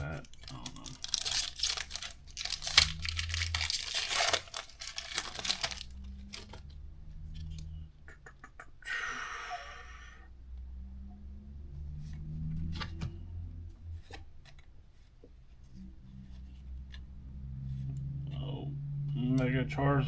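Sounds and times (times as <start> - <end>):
foil wrapper tearing and crinkling: 0.0 - 6.6.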